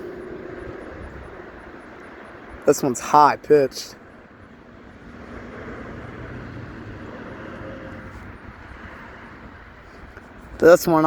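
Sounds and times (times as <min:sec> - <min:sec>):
vehicle passing: 0:00.0 - 0:10.7.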